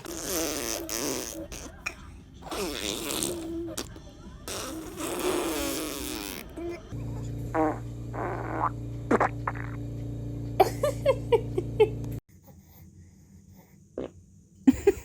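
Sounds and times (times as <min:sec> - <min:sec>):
baby farting: 0:00.0 - 0:06.7, 0:07.5 - 0:09.8
steady low hum: 0:06.4 - 0:15.0.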